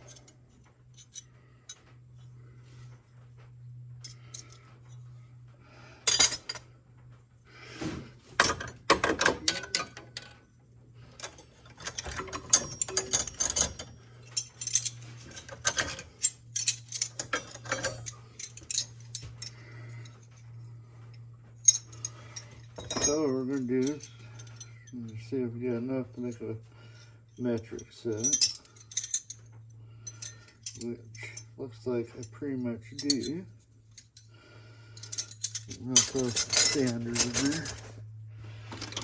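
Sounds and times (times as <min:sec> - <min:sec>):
metal wrenches clinking: 0:00.0 - 0:00.3, 0:01.0 - 0:01.8, 0:04.0 - 0:04.6, 0:06.1 - 0:06.6, 0:08.4 - 0:10.3, 0:11.2 - 0:20.3, 0:21.6 - 0:25.2, 0:27.4 - 0:31.5, 0:32.8 - 0:34.2, 0:35.0 - 0:38.0, 0:38.6 - 0:39.0
steady low hum: 0:00.0 - 0:39.0.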